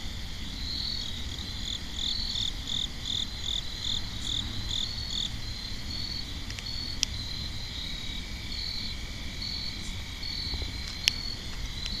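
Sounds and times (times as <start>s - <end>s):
crickets chirping: 0.0s - 12.0s
campfire pops: 10.4s - 12.0s.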